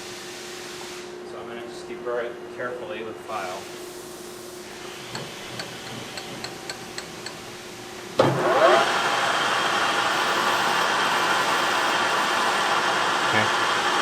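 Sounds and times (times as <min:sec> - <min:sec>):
lathe motor whining and running: 0:07.5 - 0:14.0.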